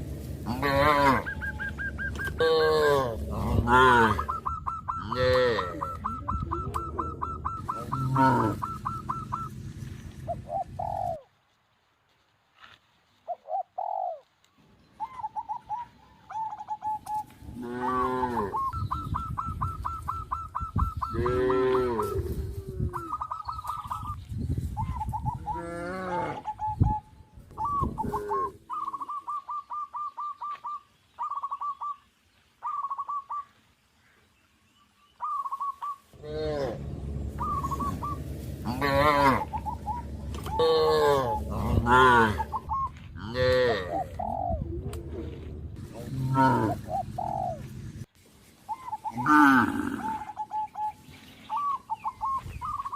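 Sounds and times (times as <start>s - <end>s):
drawn-out animal calls: 0.0s - 11.2s, 15.2s - 24.2s, 27.7s - 30.1s, 35.4s - 47.8s, 48.7s - 50.9s
rapid high trilling animal calls: 0.6s - 9.7s, 35.2s - 44.6s.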